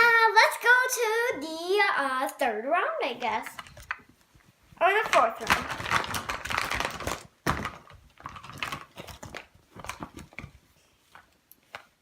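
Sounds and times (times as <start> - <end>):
plastic wrappers crinkling: 3.5 - 4.2, 4.8 - 12.0.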